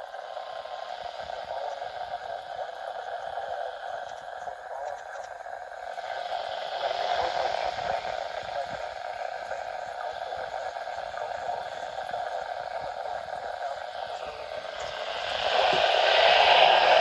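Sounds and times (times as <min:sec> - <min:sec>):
weather radio static hiss: 0:00.0 - 0:17.0.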